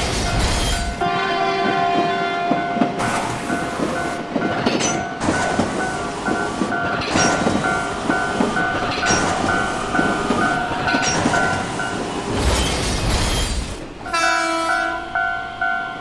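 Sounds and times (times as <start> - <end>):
train passing with rail clatter: 0.0 - 16.0
train horn: 1.0 - 4.2, 14.0 - 15.2.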